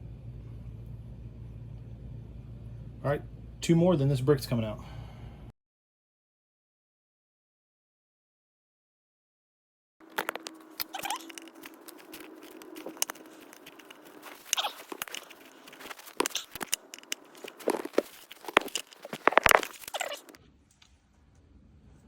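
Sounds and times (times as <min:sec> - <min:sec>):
screwdriver scraping on bolt: 0:10.2 - 0:20.4.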